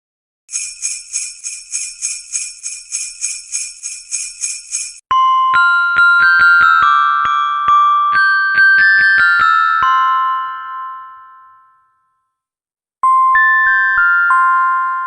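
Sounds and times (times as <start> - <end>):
sleigh bells jingling: 0.5 - 5.0
bell-like keyboard melody: 0.5 - 12.2, 13.0 - 15.0.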